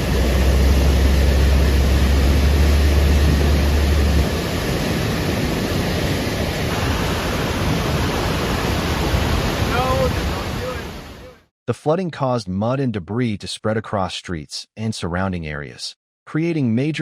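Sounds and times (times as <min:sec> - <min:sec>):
deep rumble: 0:00.0 - 0:10.8
rushing water: 0:00.0 - 0:11.4.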